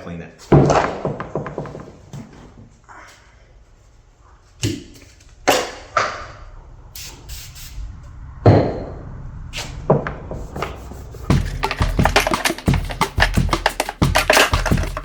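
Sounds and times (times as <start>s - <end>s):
knocks and rubbing on plastic: 10.4s - 15.0s.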